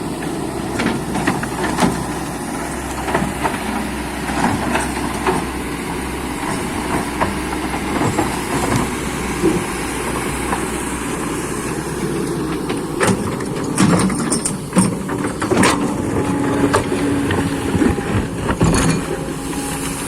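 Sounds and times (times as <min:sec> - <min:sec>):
excavator diesel engine running: 0:00.0 - 0:20.0
metallic clanks and knocks: 0:12.6 - 0:19.3.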